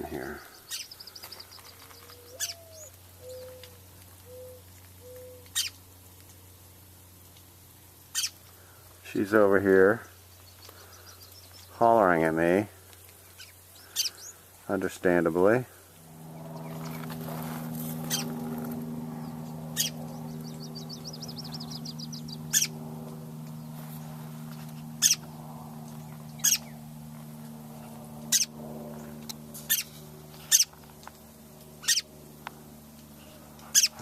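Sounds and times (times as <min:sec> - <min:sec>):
steady low hum: 0:00.0 - 0:34.0
bird alarm calls: 0:00.6 - 0:05.8, 0:08.1 - 0:08.4, 0:13.3 - 0:14.5, 0:17.9 - 0:22.8, 0:25.0 - 0:25.4, 0:26.3 - 0:26.8, 0:28.3 - 0:28.5, 0:29.7 - 0:30.8, 0:31.8 - 0:32.1, 0:33.7 - 0:34.0
bird trill: 0:00.6 - 0:05.8, 0:08.1 - 0:08.4, 0:13.3 - 0:14.4, 0:16.2 - 0:22.8, 0:25.0 - 0:25.3, 0:26.2 - 0:26.8, 0:28.3 - 0:28.5, 0:29.6 - 0:30.8, 0:31.8 - 0:32.1, 0:33.7 - 0:34.0.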